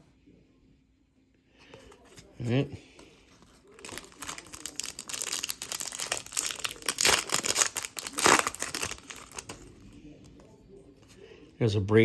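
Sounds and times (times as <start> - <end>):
wrapper crinkling and tearing: 3.5 - 9.7.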